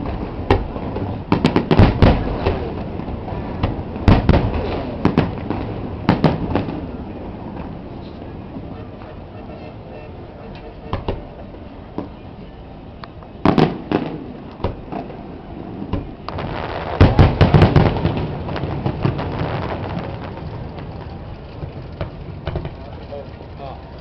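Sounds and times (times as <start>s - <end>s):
small firework pops: 0.0s - 2.8s, 13.0s - 15.2s, 15.8s - 22.8s
fireworks banging: 0.0s - 12.3s, 13.1s - 24.0s.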